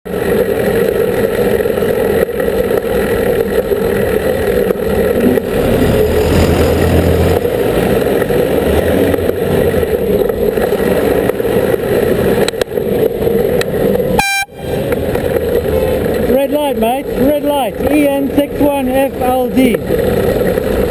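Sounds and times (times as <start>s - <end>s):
city traffic noise: 0.0s - 20.9s
air horn blast: 14.2s - 14.8s.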